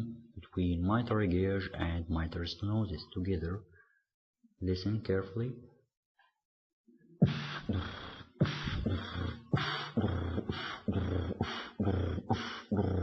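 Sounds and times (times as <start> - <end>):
heartbeat: 7.2 - 13.0
rumbling heart murmur: 7.2 - 13.0.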